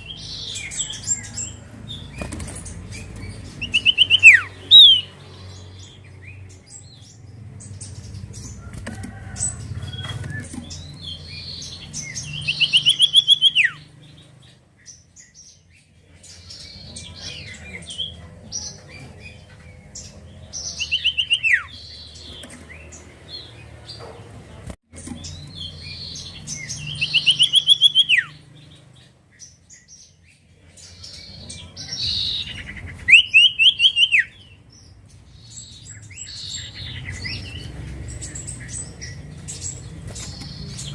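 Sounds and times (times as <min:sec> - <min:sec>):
bird trilling: 0:00.0 - 0:06.0, 0:08.5 - 0:14.0, 0:16.4 - 0:22.8, 0:25.3 - 0:28.5, 0:30.9 - 0:34.7
soft bird chirps: 0:00.0 - 0:24.4.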